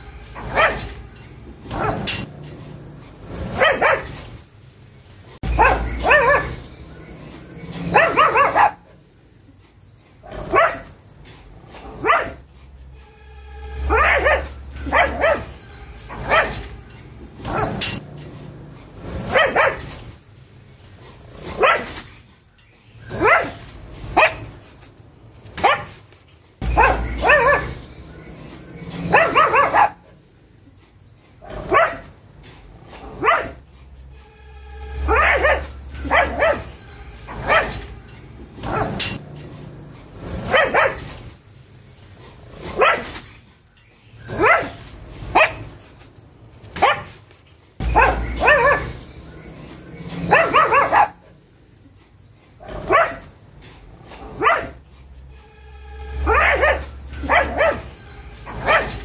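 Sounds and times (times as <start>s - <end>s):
dog barking: 0.4s - 1.0s, 1.7s - 2.3s, 3.3s - 4.2s, 5.4s - 6.7s, 7.7s - 9.0s, 10.3s - 11.0s, 11.8s - 12.4s, 13.8s - 16.8s, 17.4s - 18.0s, 19.2s - 19.9s, 21.5s - 22.0s, 23.1s - 24.6s, 25.6s - 26.0s, 26.6s - 28.4s, 29.0s - 30.2s, 31.4s - 32.1s, 33.0s - 33.6s, 35.0s - 37.9s, 38.6s - 39.2s, 40.4s - 41.1s, 42.7s - 43.2s, 44.3s - 45.8s, 46.8s - 47.2s, 47.8s - 49.5s, 50.2s - 51.3s, 52.6s - 53.3s, 54.2s - 54.8s, 56.2s - 59.0s.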